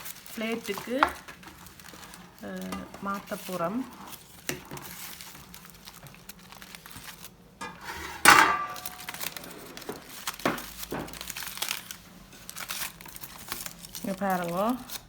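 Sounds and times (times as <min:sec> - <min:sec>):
dishes knocking and scraping: 0:07.6 - 0:08.8
loud ringing dish clink: 0:08.3 - 0:08.9.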